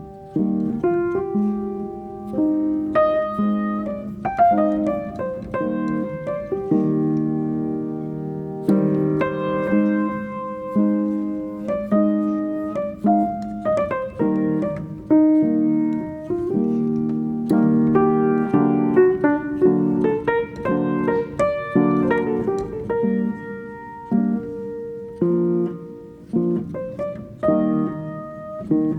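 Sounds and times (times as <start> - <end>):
piano music: 0.0 - 28.9.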